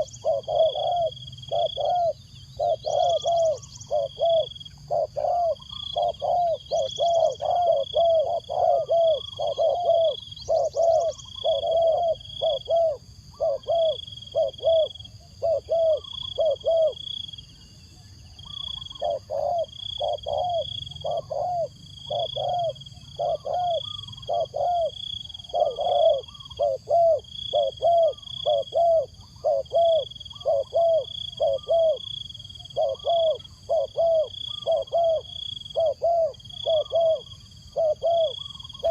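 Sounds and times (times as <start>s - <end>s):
dove cooing: 0.0s - 17.3s, 18.4s - 38.9s.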